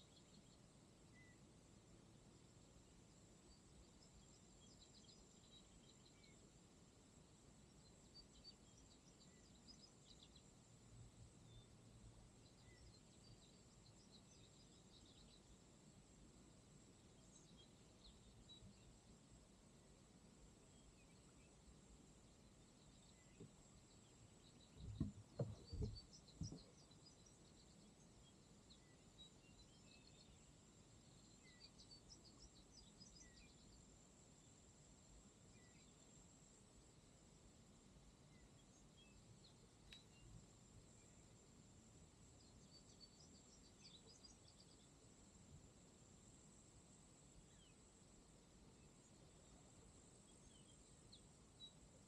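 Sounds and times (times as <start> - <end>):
faint bird chirps: 0.0 - 19.6, 20.2 - 37.0, 38.2 - 52.0
kayak paddle thumps: 24.8 - 26.7.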